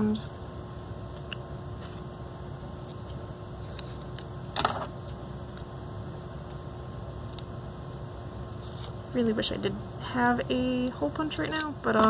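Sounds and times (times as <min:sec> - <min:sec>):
low room hum: 0:00.0 - 0:12.0
paper rustling: 0:08.6 - 0:09.0.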